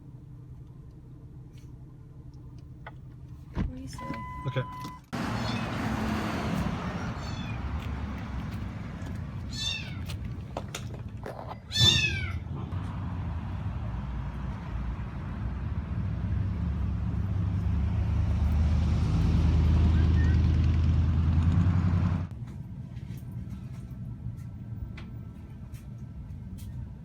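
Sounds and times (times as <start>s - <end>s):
low traffic rumble: 0.0s - 27.0s
kitten meowing: 5.4s - 5.8s, 6.9s - 7.8s, 9.5s - 10.1s, 11.7s - 12.4s.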